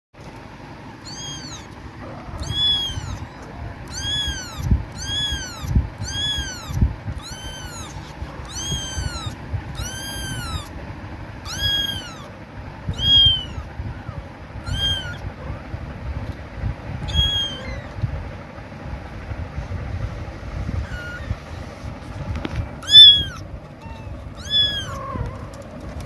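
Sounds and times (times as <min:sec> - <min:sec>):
kitten meowing loudly: 0:01.0 - 0:10.7, 0:11.4 - 0:15.3, 0:17.0 - 0:18.0, 0:20.8 - 0:21.4, 0:22.8 - 0:25.4.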